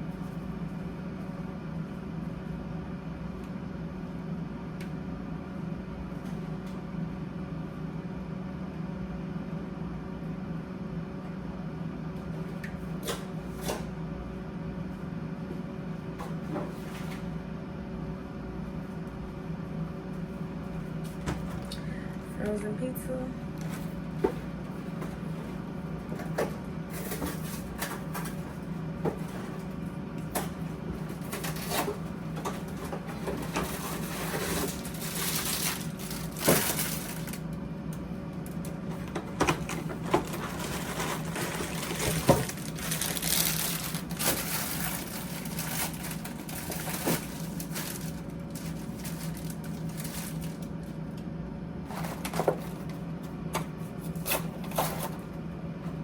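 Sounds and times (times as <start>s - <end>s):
packaging crinkling and crunching: 31.2s - 37.5s, 39.5s - 51.0s.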